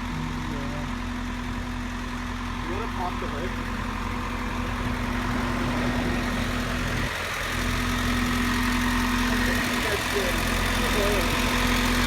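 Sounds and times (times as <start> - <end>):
engine idling: 0.0 - 12.0.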